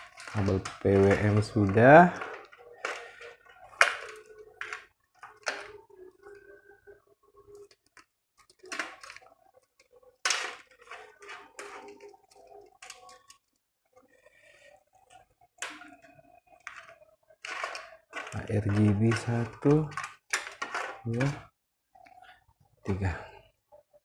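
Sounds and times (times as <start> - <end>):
plastic connectors clicking: 0.0 - 5.8, 15.6 - 21.4
cables rustling: 0.0 - 23.2.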